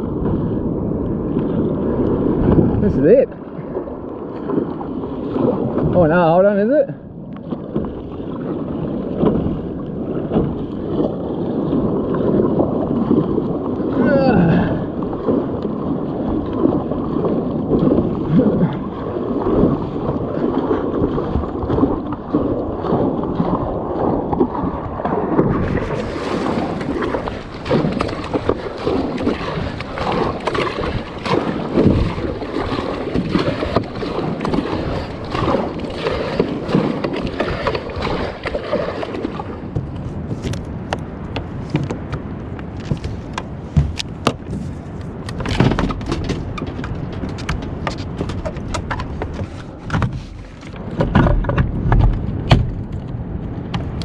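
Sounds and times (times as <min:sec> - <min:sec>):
water splashing against a hull: 0:00.0 - 0:54.0
wind on the microphone: 0:00.0 - 0:54.0
knocks: 0:42.8 - 0:44.6.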